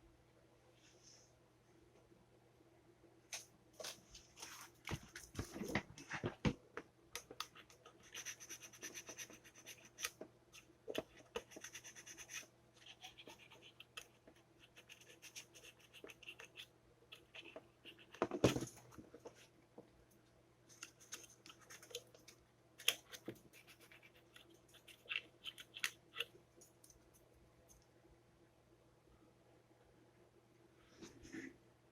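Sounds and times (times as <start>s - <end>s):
scratching and rasping: 7.4s - 19.4s, 20.7s - 27.3s.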